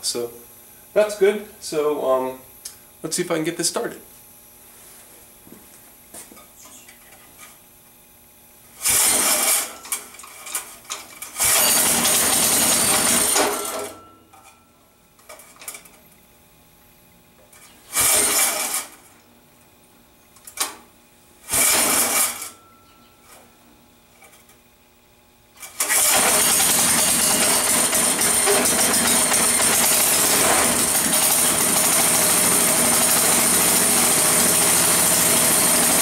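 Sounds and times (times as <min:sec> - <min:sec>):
small engine short bursts: 0:08.8 - 0:10.0, 0:11.3 - 0:14.0, 0:17.6 - 0:19.0, 0:21.5 - 0:22.6, 0:25.6 - 0:36.0
recoil starter yanks: 0:08.8 - 0:14.0, 0:17.5 - 0:19.1, 0:21.5 - 0:23.5, 0:25.6 - 0:36.0.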